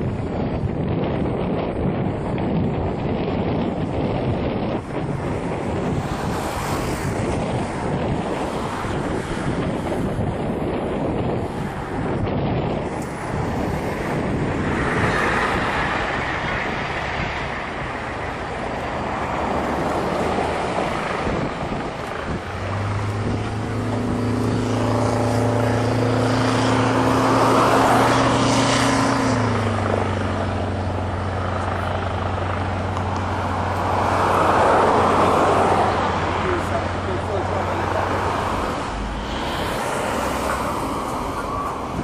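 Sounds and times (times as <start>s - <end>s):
engine noise: 0.0s - 42.0s
low even drone: 0.0s - 42.0s
steady rush: 0.0s - 42.0s.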